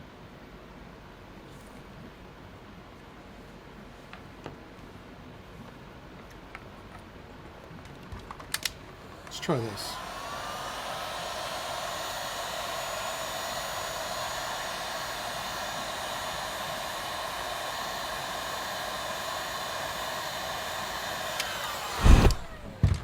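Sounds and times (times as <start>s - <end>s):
fan winding down whine: 8.6s - 23.0s
heat gun running: 8.8s - 23.0s
loud thump: 21.9s - 23.0s.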